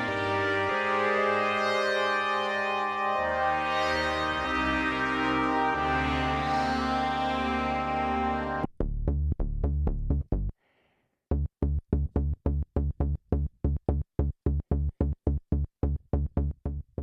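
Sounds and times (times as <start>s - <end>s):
synthesizer chord: 0.0s - 8.7s
punchy synth bass notes: 0.0s - 10.5s.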